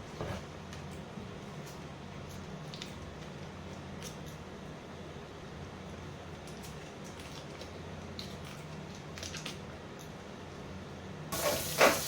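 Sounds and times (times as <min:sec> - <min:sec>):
water pouring: 0:11.4 - 0:12.0.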